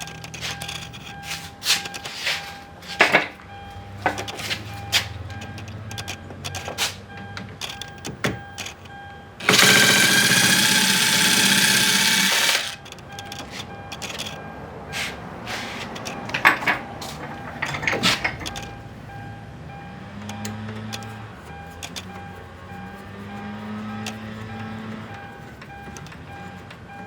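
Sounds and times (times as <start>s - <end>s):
tools clicking and knocking: 0.0s - 14.4s, 15.8s - 18.8s, 20.2s - 22.3s, 23.0s - 27.0s
loud rapid rattling buzz: 9.4s - 12.8s.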